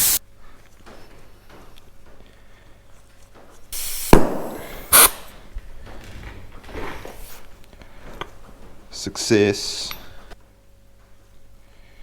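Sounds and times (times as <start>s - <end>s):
compressed air hissing: 0.0s - 0.2s, 3.8s - 5.5s
sharp bang: 4.0s - 5.3s.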